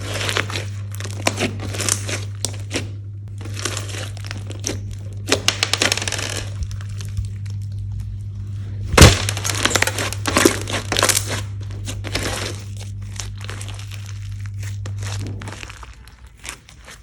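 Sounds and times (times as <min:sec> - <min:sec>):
low hum: 0:00.0 - 0:17.0
slime crackling and popping: 0:08.9 - 0:11.4.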